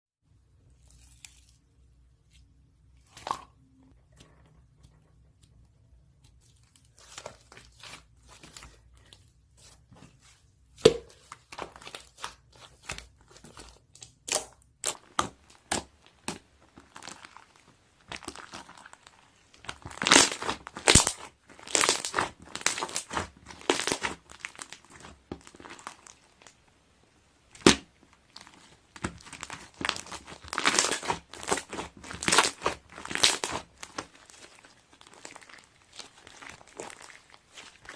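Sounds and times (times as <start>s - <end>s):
wrapping material crinkling and tearing: 11.4s - 26.6s, 27.6s - 37.9s.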